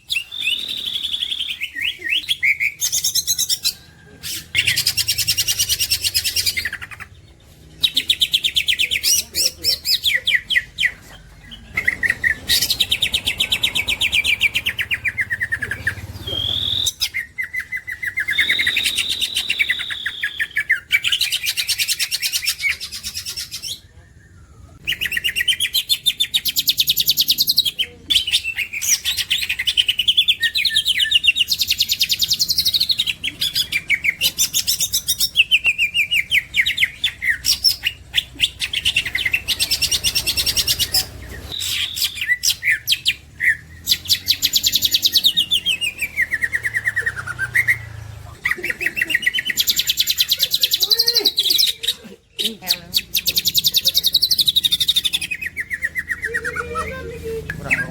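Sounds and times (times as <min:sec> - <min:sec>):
bird singing chattering trills: 0:00.0 - 0:57.9.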